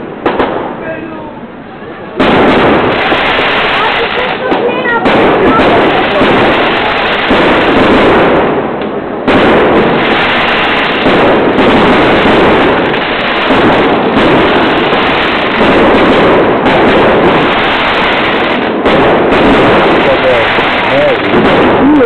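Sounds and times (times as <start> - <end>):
fireworks bangs and crackling: 0.0 - 22.0.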